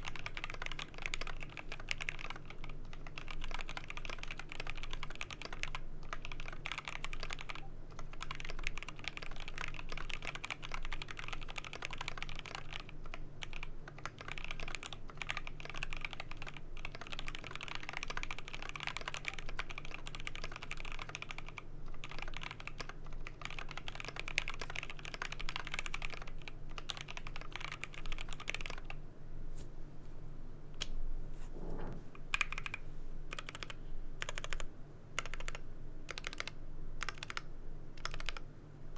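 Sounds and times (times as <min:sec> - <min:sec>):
typing on mechanical keyboard: 0:00.0 - 0:29.0, 0:32.3 - 0:38.5
deep thump: 0:31.5 - 0:32.1.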